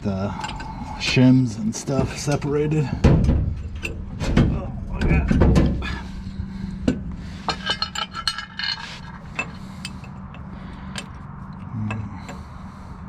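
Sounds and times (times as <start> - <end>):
low hum: 0.0 - 13.0
metal parts clinking: 7.4 - 10.2.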